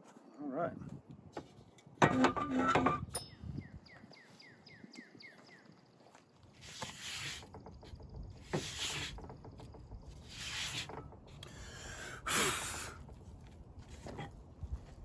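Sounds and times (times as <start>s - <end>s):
wood board scrubbing fire roll: 6.6s - 11.3s
heavy breathing: 11.4s - 13.1s.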